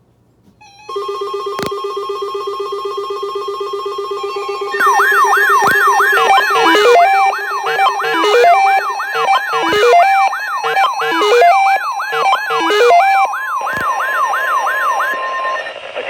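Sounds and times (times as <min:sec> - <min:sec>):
rising and falling siren sweep: 0:04.1 - 0:15.7
stepped electronic melody: 0:04.1 - 0:15.7.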